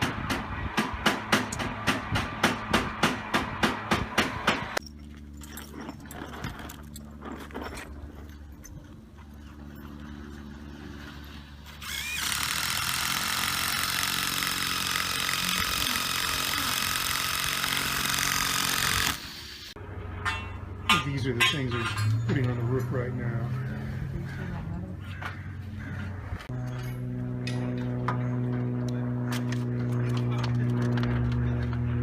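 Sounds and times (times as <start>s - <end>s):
low hum: 0.0s - 32.0s
power tool whirring: 11.6s - 19.8s.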